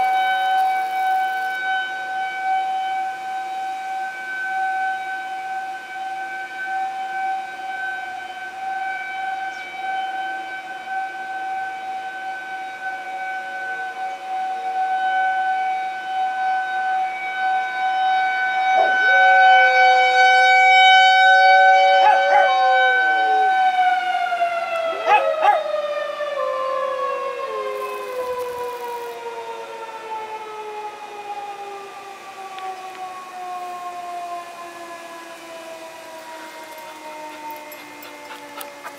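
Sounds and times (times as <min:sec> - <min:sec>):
warning siren wailing: 0:00.0 - 0:38.9
dog howling: 0:18.8 - 0:19.4, 0:21.8 - 0:23.9, 0:24.8 - 0:26.8, 0:36.4 - 0:38.9.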